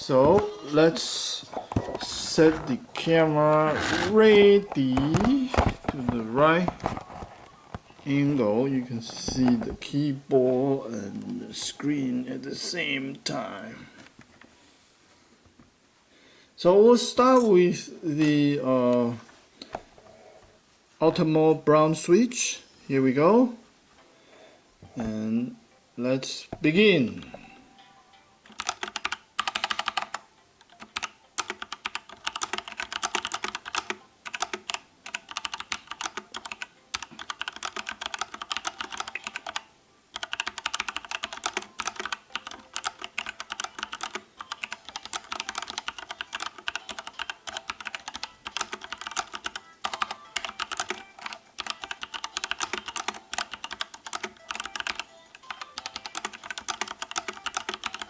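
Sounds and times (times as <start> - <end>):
fast typing on mechanical keyboard: 28.5 - 58.0.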